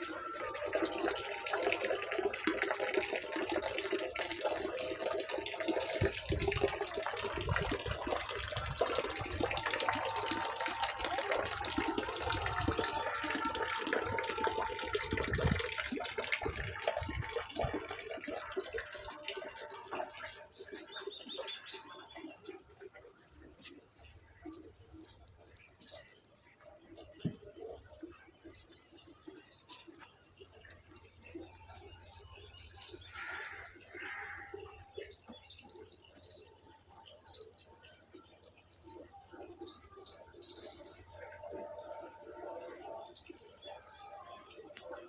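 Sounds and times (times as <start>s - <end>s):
water running and splashing: 0.0s - 23.8s, 29.2s - 45.0s.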